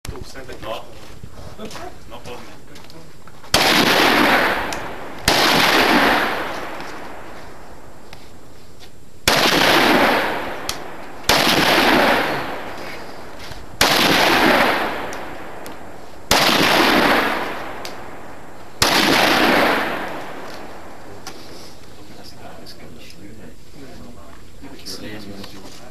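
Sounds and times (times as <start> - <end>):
rifle shots echoing: 3.5 - 8.0, 9.2 - 21.5.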